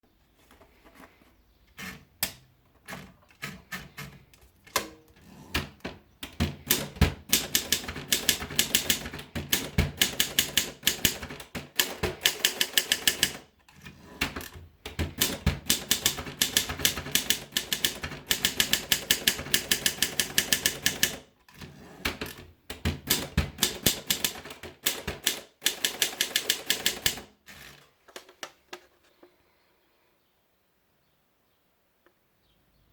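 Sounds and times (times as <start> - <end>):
typewriter key strikes: 6.2 - 13.4, 14.9 - 21.2, 22.2 - 27.3.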